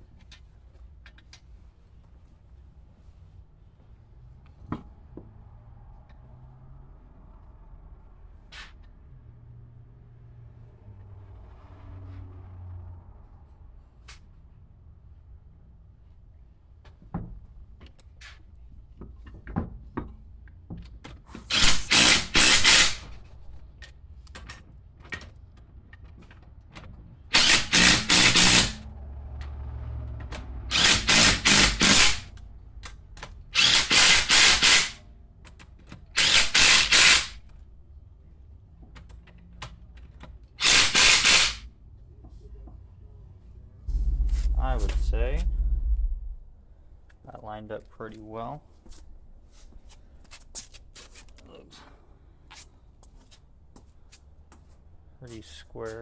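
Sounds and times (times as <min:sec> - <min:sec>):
power tool pulsing rattle: 0:27.4 - 0:28.8, 0:30.7 - 0:32.3, 0:36.2 - 0:37.4, 0:40.6 - 0:41.6.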